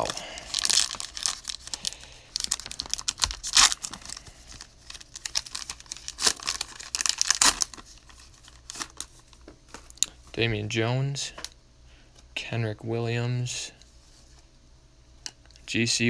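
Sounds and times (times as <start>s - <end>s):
cellophane wrapper tearing and crinkling: 0.0s - 10.1s.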